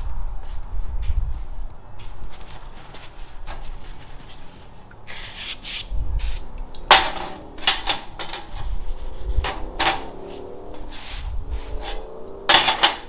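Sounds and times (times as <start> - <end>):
metallic clinks and knocks: 6.8 - 8.7, 11.8 - 13.0
steel parts scraping: 6.9 - 10.2, 10.8 - 13.0.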